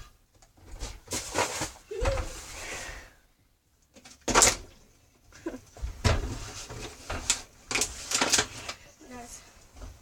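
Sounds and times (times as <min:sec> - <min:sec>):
plastic bottle hitting hard surface: 0:04.0 - 0:04.7.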